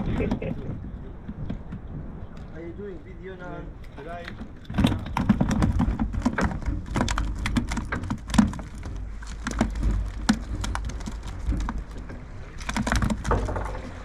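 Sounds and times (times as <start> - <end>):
wind rumbling on microphone: 0.0 - 14.0
close clicks and knocks: 3.8 - 14.0.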